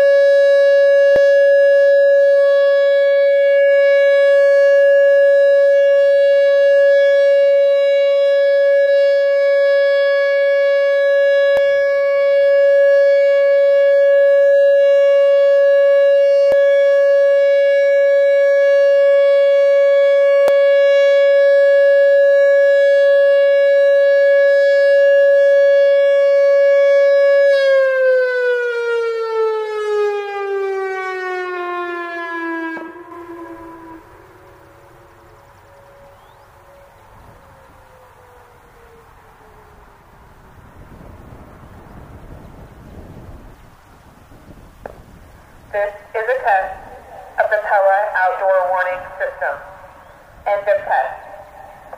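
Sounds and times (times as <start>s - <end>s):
electronic warning siren: 0.0s - 43.6s, 45.7s - 51.9s.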